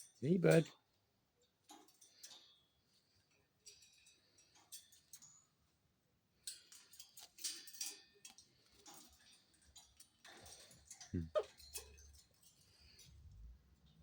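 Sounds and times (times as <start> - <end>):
bird feet and beaks clicking on cage: 1.5 - 5.6, 6.4 - 14.0.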